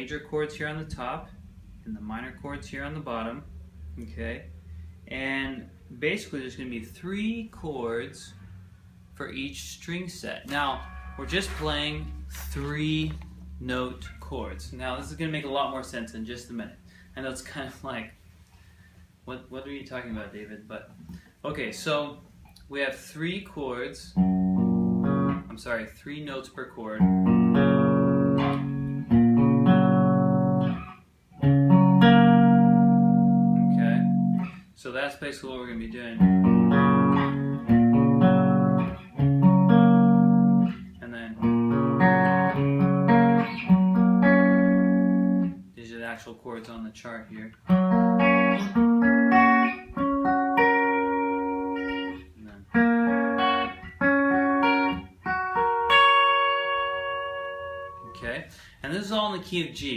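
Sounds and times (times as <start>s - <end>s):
guitar picking chords: 9.2s - 16.7s, 23.6s - 34.7s, 35.5s - 45.7s, 47.4s - 58.3s.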